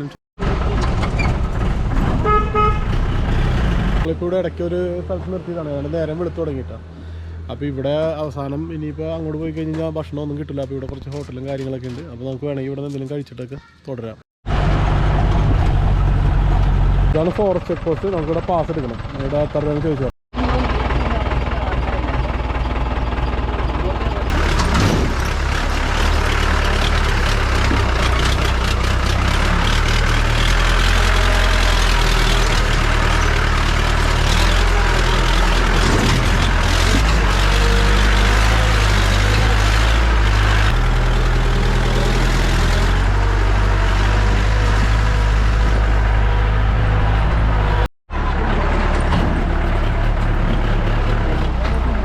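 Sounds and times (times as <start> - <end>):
car engine droning: 14.5 - 52.0.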